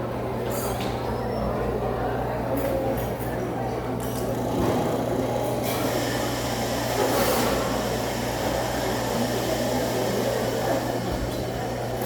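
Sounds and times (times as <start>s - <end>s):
murmur of the room: 0.0s - 12.0s.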